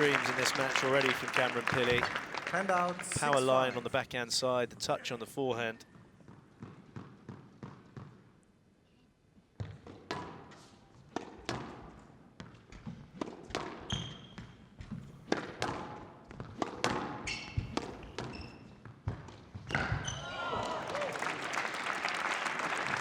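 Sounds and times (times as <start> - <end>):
shoe squeaks on court: 13.8 - 14.7, 17.1 - 18.8.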